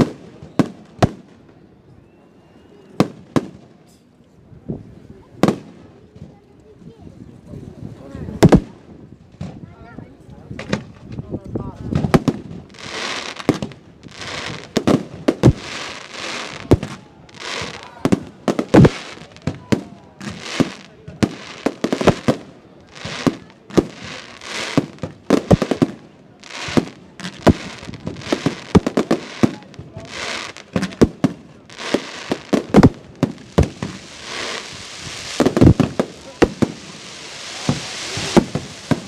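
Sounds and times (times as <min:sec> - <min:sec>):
firework crackling hiss: 0:12.0 - 0:39.0
firework shells bursting: 0:20.2 - 0:39.0.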